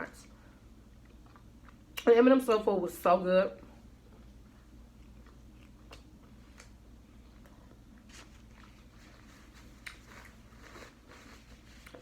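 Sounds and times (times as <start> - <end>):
person chewing: 0.9 - 2.0, 4.0 - 11.2.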